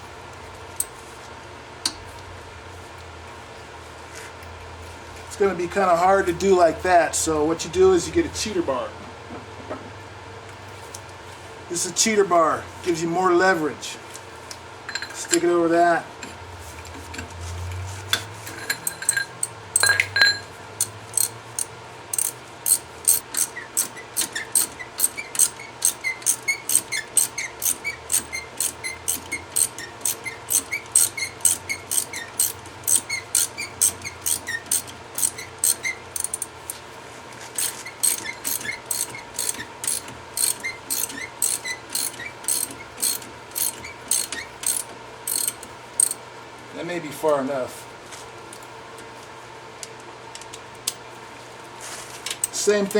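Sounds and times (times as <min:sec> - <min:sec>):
socket ratchet clicking: 0:20.8 - 0:36.8, 0:37.6 - 0:46.2.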